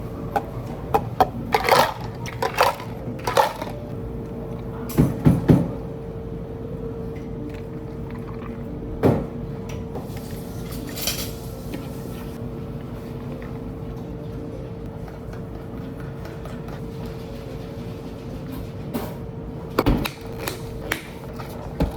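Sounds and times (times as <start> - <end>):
dishes and utensils clinking: 0.3 - 3.9, 10.2 - 11.9.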